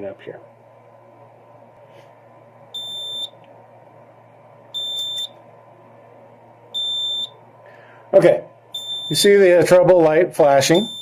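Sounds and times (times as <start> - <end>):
alarm panel beeping: 2.8 - 3.4, 4.8 - 5.4, 6.8 - 7.4, 8.7 - 9.3, 10.7 - 11.0.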